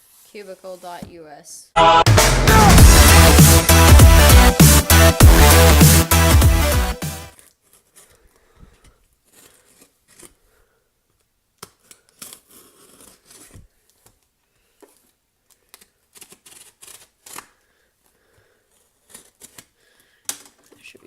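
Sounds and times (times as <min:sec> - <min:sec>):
cardboard and tape tearing: 0:07.3 - 0:10.6, 0:11.6 - 0:17.8, 0:18.7 - 0:21.0.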